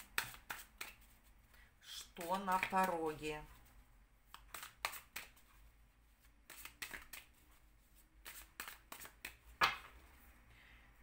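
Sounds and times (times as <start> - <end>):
cards being shuffled: 0.0 - 3.7, 4.3 - 5.6, 6.2 - 7.6, 8.2 - 9.9.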